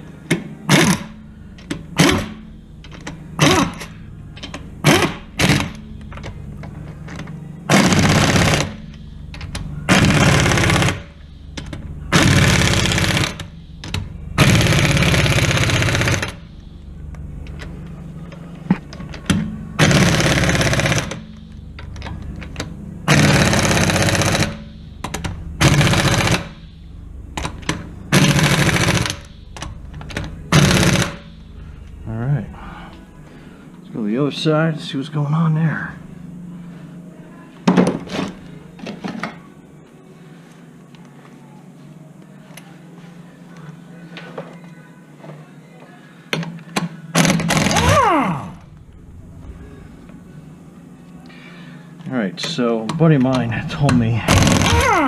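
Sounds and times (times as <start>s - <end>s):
impact wrench hammering: 0.3s - 6.3s, 7.2s - 16.4s, 19.2s - 21.4s, 22.6s - 26.6s, 27.4s - 31.3s, 53.8s - 55.0s.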